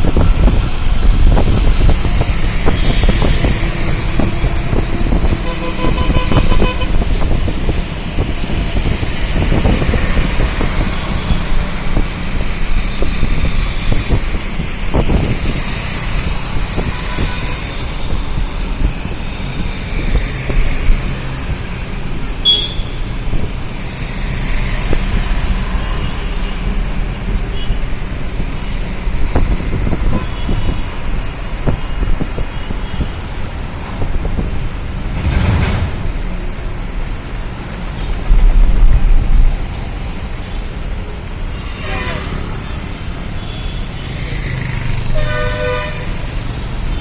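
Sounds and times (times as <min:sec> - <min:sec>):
road traffic rumble: 0:00.0 - 0:47.0
vehicle horns tooting: 0:05.2 - 0:07.2, 0:22.4 - 0:23.1, 0:45.1 - 0:46.3.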